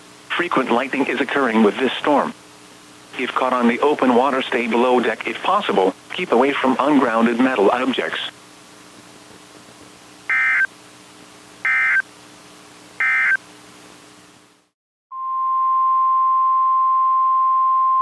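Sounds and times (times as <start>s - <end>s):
raspy data tone bursts: 10.3s - 10.7s, 11.6s - 12.0s, 13.0s - 13.4s
steady warning alarm tone: 10.3s - 10.7s, 11.6s - 12.0s, 13.0s - 13.4s.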